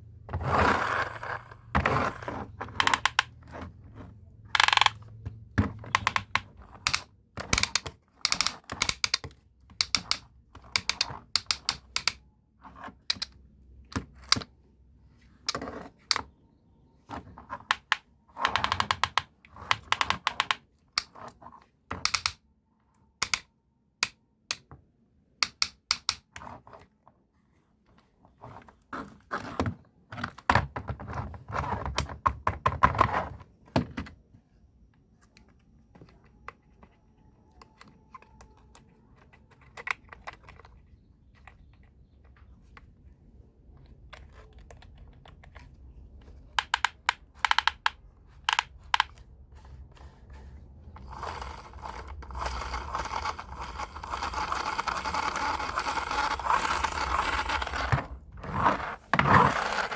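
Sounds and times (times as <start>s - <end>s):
plastic toy clicks and clacks: 2.7s - 3.5s, 4.5s - 5.2s, 5.8s - 12.2s, 17.7s - 21.1s, 22.0s - 22.4s, 23.2s - 24.6s, 46.6s - 49.2s, 51.0s - 58.2s.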